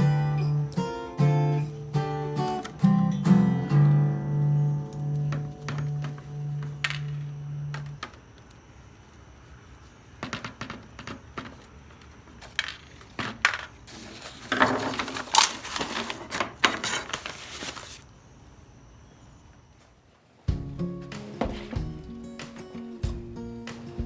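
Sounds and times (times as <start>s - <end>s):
clattering and scraping: 10.2s - 18.0s.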